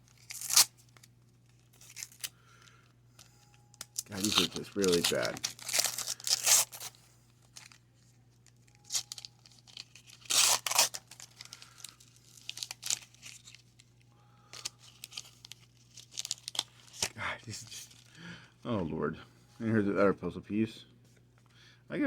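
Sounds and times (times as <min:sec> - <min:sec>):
wax paper tearing and crinkling: 0:00.0 - 0:02.6, 0:03.9 - 0:07.8, 0:08.8 - 0:14.0, 0:14.6 - 0:18.1.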